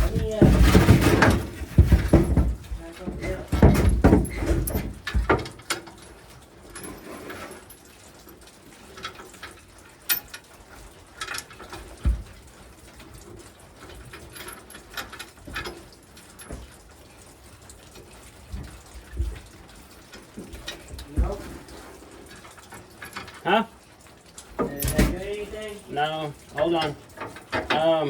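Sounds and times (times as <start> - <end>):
dull thump: 0.0 - 5.5
faint clicks and knocks: 0.0 - 28.0.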